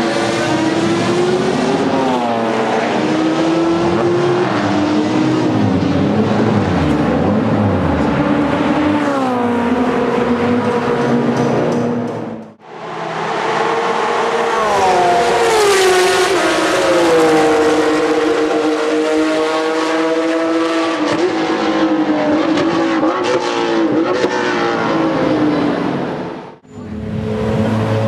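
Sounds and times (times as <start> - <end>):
race car engine at high revs: 0.0 - 28.0.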